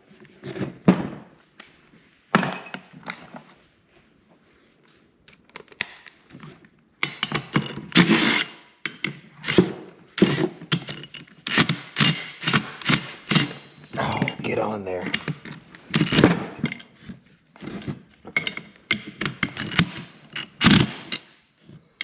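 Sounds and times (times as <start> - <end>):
metal parts clanking and scraping: 7.0 - 21.4.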